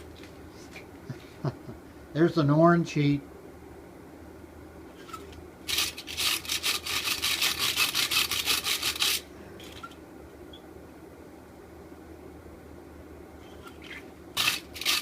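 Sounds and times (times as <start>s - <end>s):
low steady hum: 0.0s - 15.0s
rapid scraping strokes: 5.0s - 9.9s, 13.7s - 15.0s.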